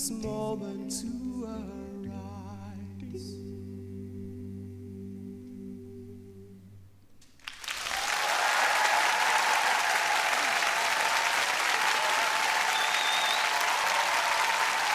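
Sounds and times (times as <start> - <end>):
audience applause: 7.4 - 14.9.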